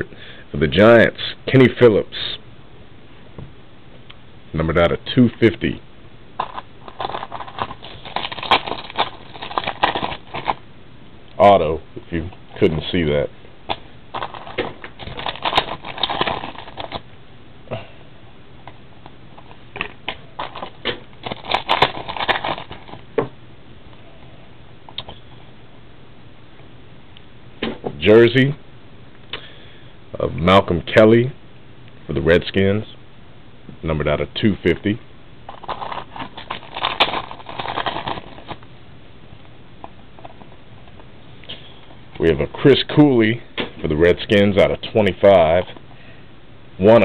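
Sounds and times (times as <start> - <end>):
card packaging crinkles and rustles: 6.4 - 10.6, 13.7 - 17.0, 19.4 - 23.1, 35.5 - 38.6.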